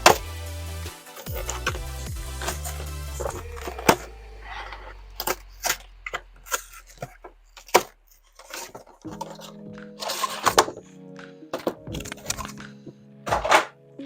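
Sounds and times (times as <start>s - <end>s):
background music: 0.0s - 7.1s, 7.7s - 14.0s.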